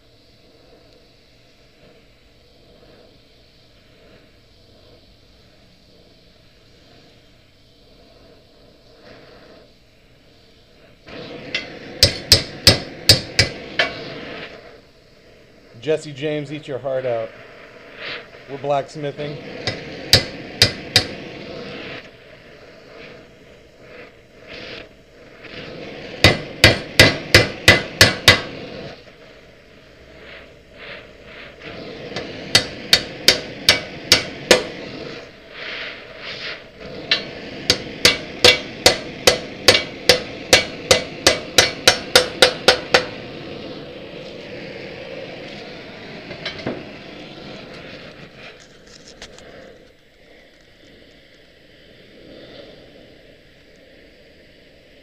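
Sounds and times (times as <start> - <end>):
hammer striking steel: 11.4 - 14.1, 19.6 - 21.2, 26.2 - 28.6, 32.2 - 34.8, 37.1 - 43.2.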